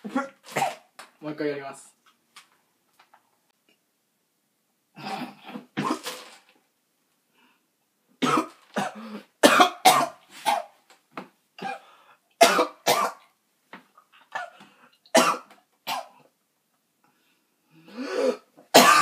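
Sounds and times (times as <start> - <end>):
man coughing hard: 8.2 - 10.6, 12.4 - 13.2, 14.4 - 16.1, 18.2 - 19.0.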